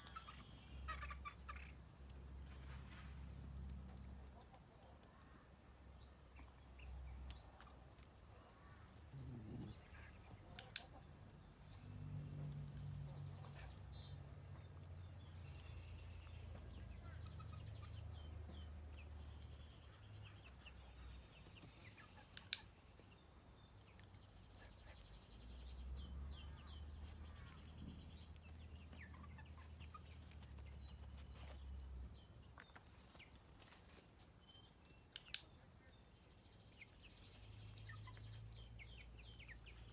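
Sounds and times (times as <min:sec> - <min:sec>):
birds chirping faintly: 0:00.0 - 0:39.9
dog-training clicker clicking: 0:10.6 - 0:10.9, 0:22.3 - 0:22.7, 0:35.2 - 0:35.5.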